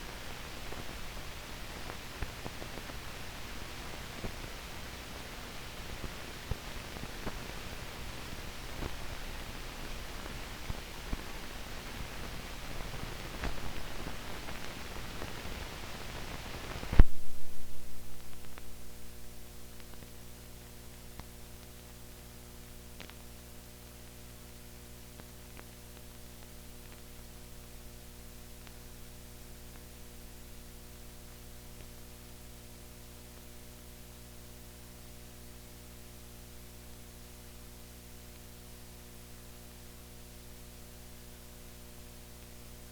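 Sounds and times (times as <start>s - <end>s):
electrical hum: 0.0s - 33.5s
film crackling hiss with clicks: 0.0s - 42.9s
sharp loud pop: 17.0s - 17.4s.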